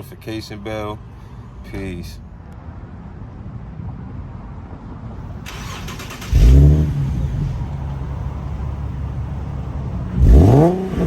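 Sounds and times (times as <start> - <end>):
car engine idling: 5.2 - 11.0
engine rev flare: 5.3 - 11.0.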